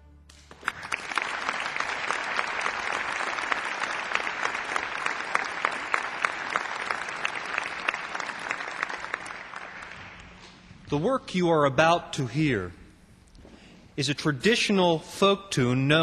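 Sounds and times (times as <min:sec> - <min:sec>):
music: 0:00.0 - 0:00.7
audience applauding: 0:00.3 - 0:10.4.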